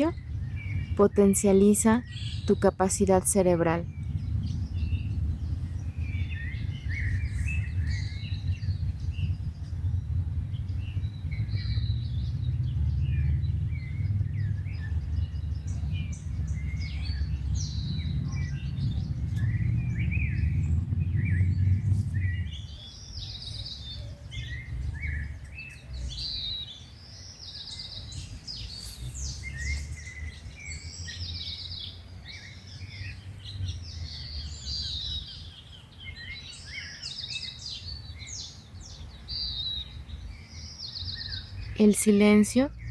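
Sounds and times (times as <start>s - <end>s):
low steady rumble: 0.0s - 26.6s
small birds chirping: 0.0s - 42.9s.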